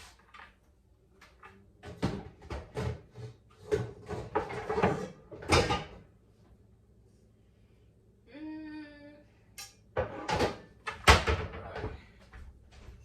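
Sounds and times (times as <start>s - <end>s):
pots and pans clattering: 1.8s - 6.1s, 10.0s - 11.9s.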